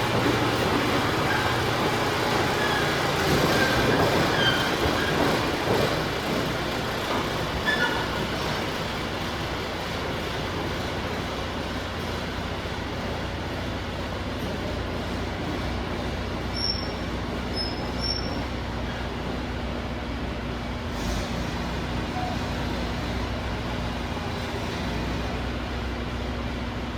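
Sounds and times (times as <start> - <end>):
track squeals: 0.0 - 9.3, 16.5 - 19.4
steel tracks clattering: 0.0 - 26.8
diesel engine running: 0.0 - 26.9.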